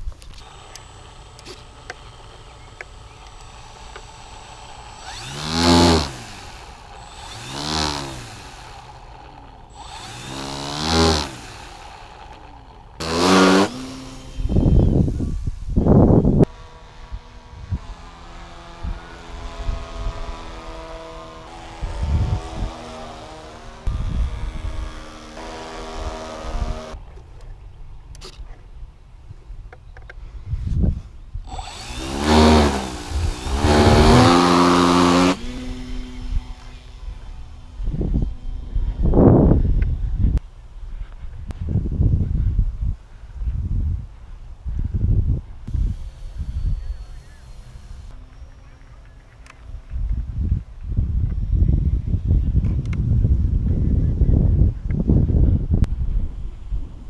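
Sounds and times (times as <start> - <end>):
model plane motor buzzing: 0.0 - 27.0, 31.4 - 40.4, 45.7 - 48.2.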